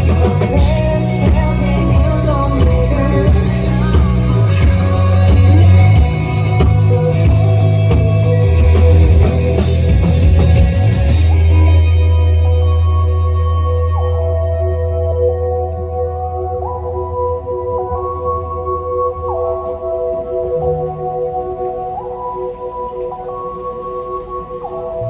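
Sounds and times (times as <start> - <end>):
live rock band playing: 0.0 - 16.3.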